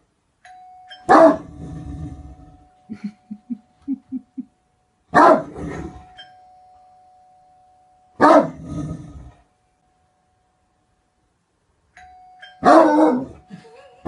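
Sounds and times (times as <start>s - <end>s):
chime-like ringing tone: 0.5s - 1.2s, 6.0s - 8.2s, 12.0s - 14.0s
dog barking: 1.1s - 1.4s, 5.2s - 5.5s, 8.2s - 8.6s, 12.6s - 13.3s.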